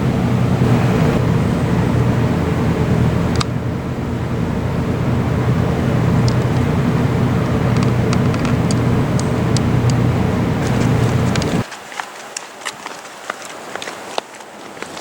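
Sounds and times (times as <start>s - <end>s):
engine rumble: 0.0s - 11.7s.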